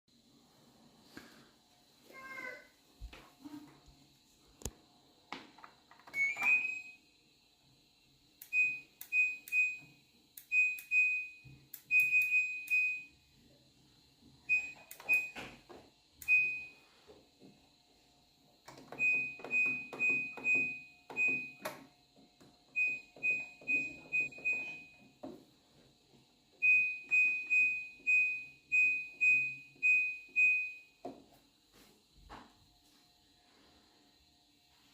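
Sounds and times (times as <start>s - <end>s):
washing machine beeps: 6.0s - 7.2s, 8.4s - 13.3s, 14.4s - 17.1s, 18.7s - 21.9s, 22.6s - 25.5s, 26.5s - 31.2s.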